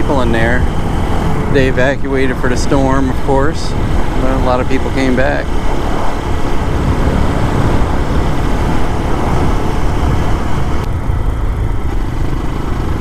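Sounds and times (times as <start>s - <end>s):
motorcycle engine running: 0.0s - 13.0s
wind noise rumble: 0.0s - 13.0s.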